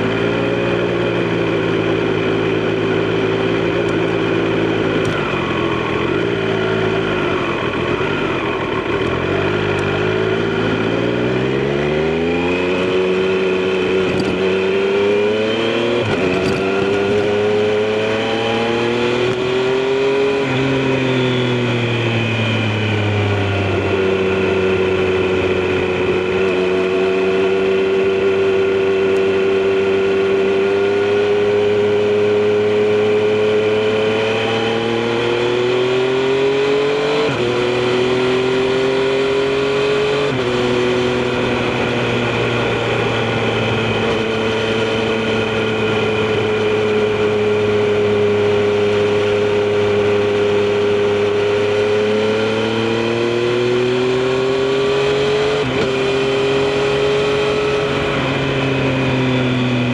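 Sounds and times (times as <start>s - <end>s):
motorcycle engine and exhaust: 0.0s - 59.9s.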